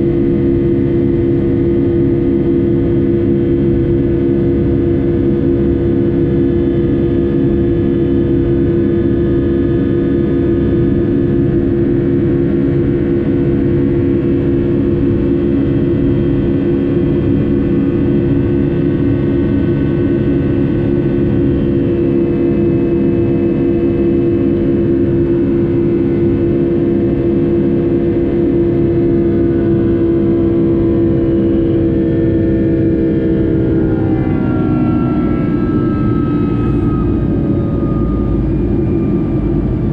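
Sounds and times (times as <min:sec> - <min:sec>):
jet engine drone in cabin: 0:00.0 - 0:39.9
rushing rumble: 0:28.6 - 0:39.9.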